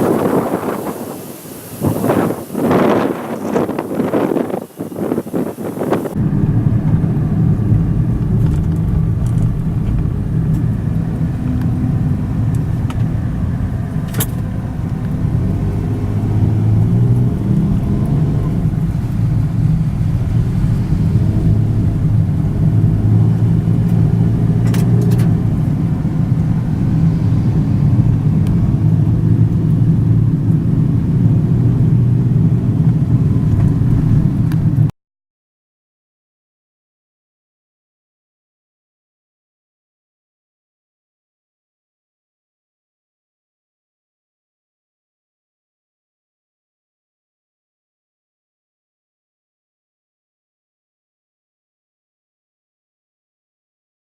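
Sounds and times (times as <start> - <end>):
car engine and road rumble: 0.0 - 34.9.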